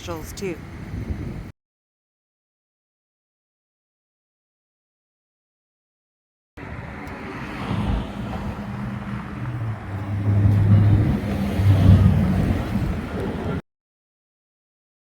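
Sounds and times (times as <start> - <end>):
road noise: 0.0 - 1.5, 6.6 - 13.6
vehicle engine humming: 6.6 - 13.6.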